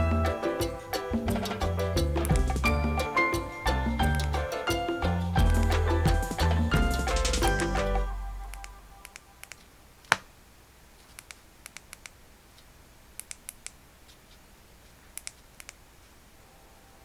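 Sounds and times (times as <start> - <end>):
multimeter probes clicking: 11.0 - 14.2, 15.1 - 15.8.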